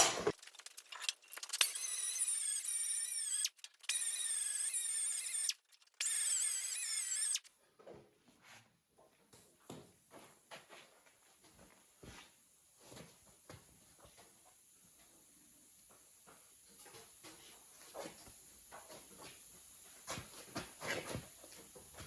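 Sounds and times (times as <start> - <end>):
angle grinder grinding steel: 0.0 - 7.5.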